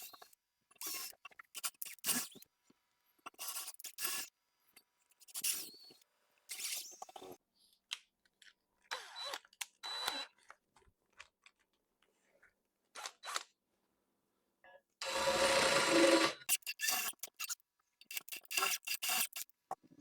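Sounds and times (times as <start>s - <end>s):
metal cutting scrapes and clicks: 0.0s - 2.4s, 16.5s - 19.6s.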